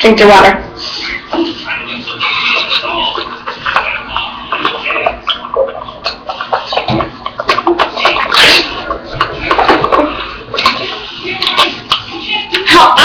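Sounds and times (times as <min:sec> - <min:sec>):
person slurping water: 0:02.4 - 0:12.0
water splashing: 0:04.5 - 0:13.0.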